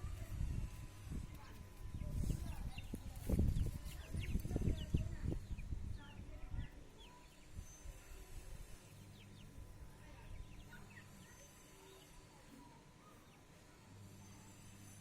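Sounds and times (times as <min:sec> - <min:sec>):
chicks peeping: 0:00.4 - 0:12.1.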